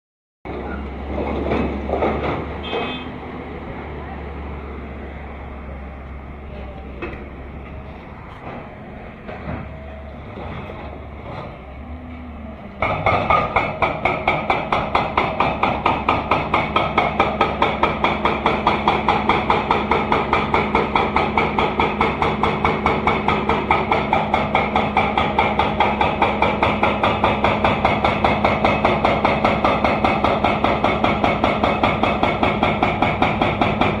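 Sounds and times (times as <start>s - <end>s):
hydraulic breaker hammering: 12.8s - 34.0s.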